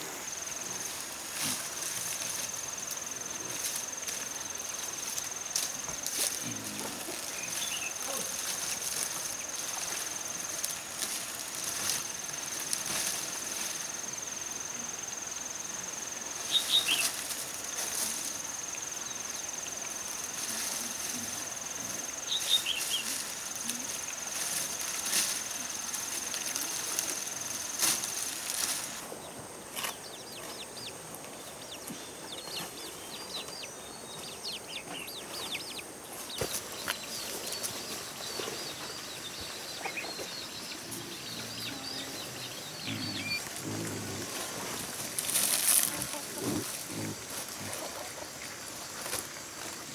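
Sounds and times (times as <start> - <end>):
bird chirps: 16.5 - 17.1, 31.6 - 43.5.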